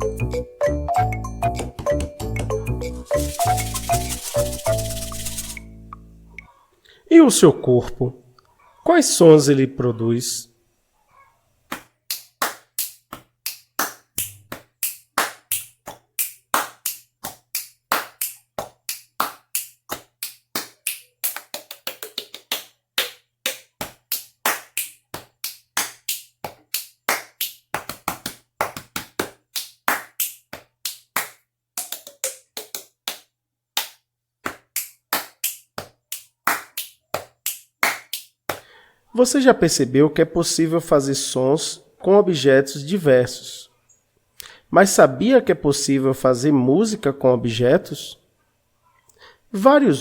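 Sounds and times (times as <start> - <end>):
body percussion claps and slaps: 11.7 - 38.7.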